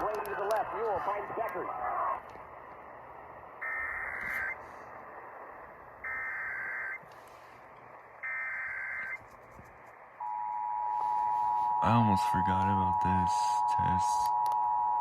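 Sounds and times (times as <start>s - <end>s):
radio hiss: 0.0s - 9.3s
digital data tone bursts: 6.0s - 7.0s.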